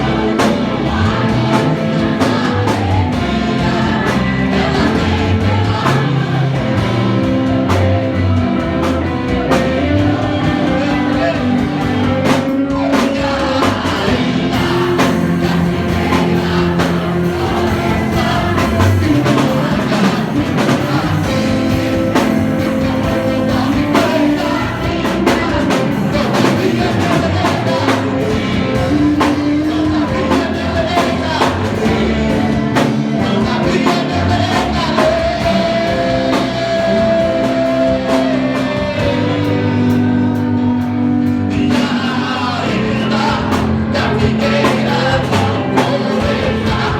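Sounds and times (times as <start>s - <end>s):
person singing: 0.0s - 46.9s
worship band playing: 0.0s - 46.9s.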